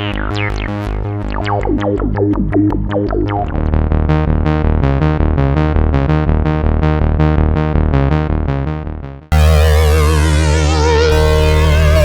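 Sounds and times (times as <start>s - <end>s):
swirling synthesizer chord: 0.0s - 4.6s, 9.3s - 12.0s
synthesizer plucked notes: 0.0s - 12.0s.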